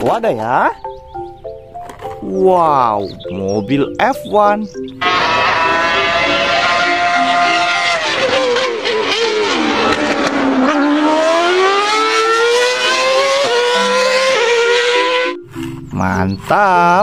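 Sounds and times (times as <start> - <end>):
race car engine revving: 5.0 - 15.4.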